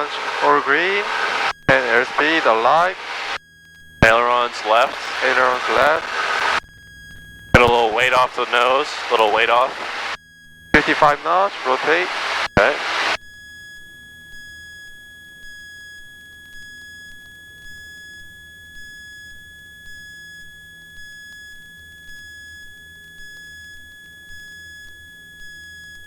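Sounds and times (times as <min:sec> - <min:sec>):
faint low hum: 0:00.0 - 0:03.4, 0:04.0 - 0:10.2, 0:10.8 - 0:13.2.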